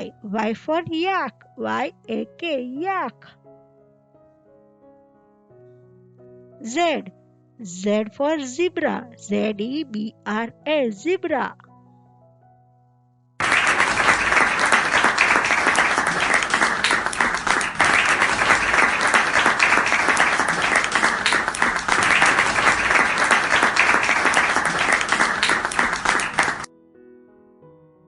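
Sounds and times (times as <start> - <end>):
hands clapping: 13.4 - 26.7.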